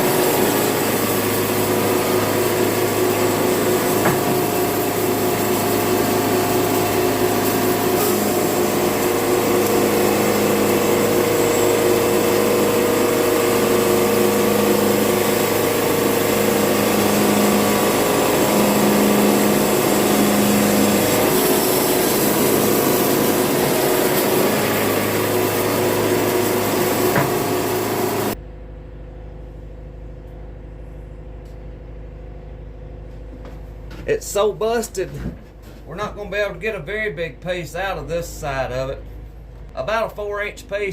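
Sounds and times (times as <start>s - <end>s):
band sawmill cutting log: 0.0s - 28.4s.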